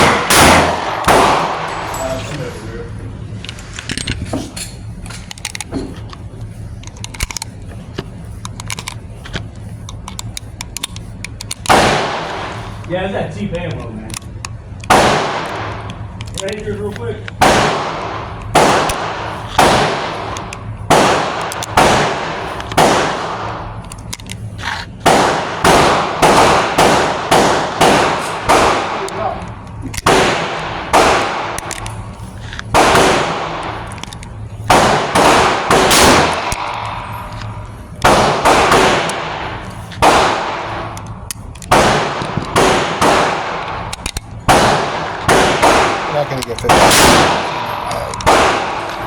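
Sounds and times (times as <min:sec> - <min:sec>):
pistol shots: 0:00.0 - 0:02.3, 0:11.6 - 0:12.8, 0:14.8 - 0:16.8, 0:17.4 - 0:23.8, 0:25.0 - 0:49.0.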